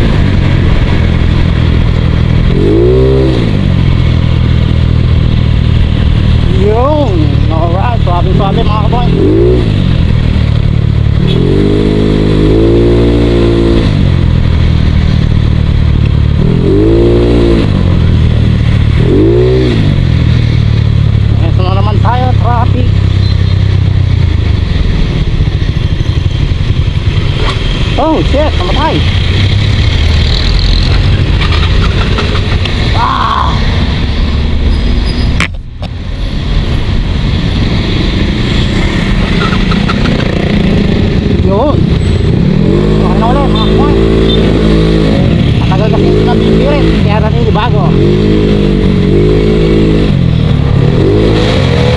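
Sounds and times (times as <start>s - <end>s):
scooter and traffic rumble: 0.0s - 51.9s
scooter engine revving: 37.6s - 51.9s.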